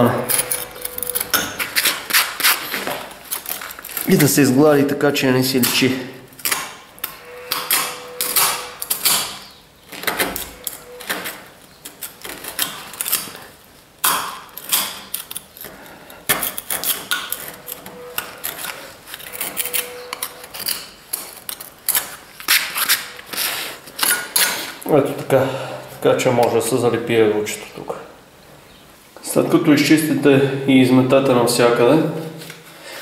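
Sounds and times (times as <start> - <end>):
metal spatula scraping plaster: 0.0 - 4.6, 14.4 - 24.8.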